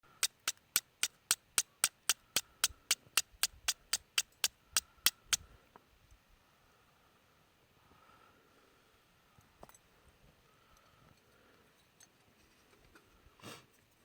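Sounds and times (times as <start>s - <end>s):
steel striker hitting flint: 0.1s - 5.4s.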